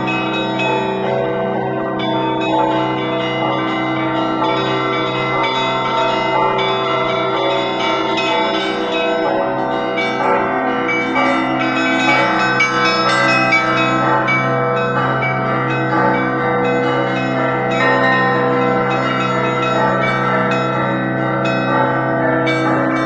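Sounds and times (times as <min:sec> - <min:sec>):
small bells struck rapidly: 0:10.2 - 0:23.0
deep bell humming: 0:10.4 - 0:23.0.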